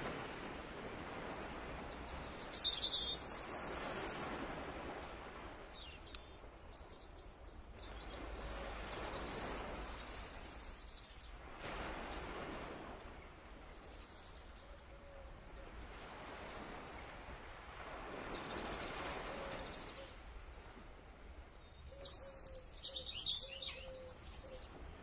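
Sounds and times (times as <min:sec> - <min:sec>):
bird chirping: 0:21.8 - 0:24.7.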